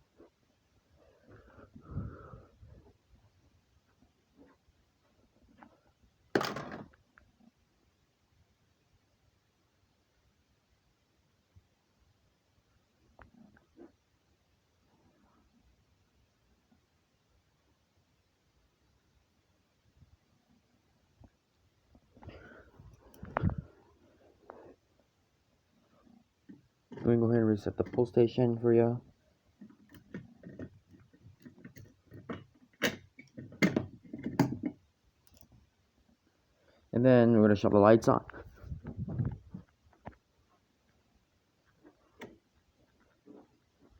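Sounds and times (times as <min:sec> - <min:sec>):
soft handling noises: 0:00.0 - 0:07.6, 0:21.2 - 0:36.9, 0:37.6 - 0:43.9.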